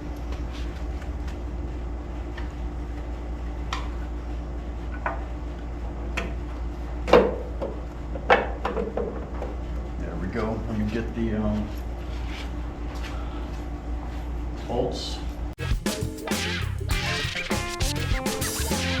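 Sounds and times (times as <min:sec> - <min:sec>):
steady low hum: 0:00.0 - 0:19.0.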